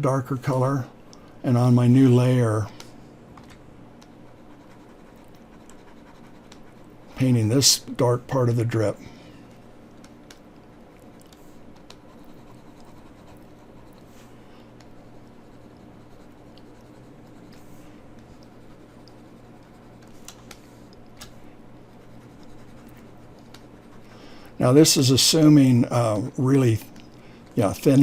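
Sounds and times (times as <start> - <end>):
faint steady hum: 0.0 - 28.0
stylus scratching on graphics tablet: 4.0 - 8.9, 10.6 - 20.8, 21.8 - 25.6.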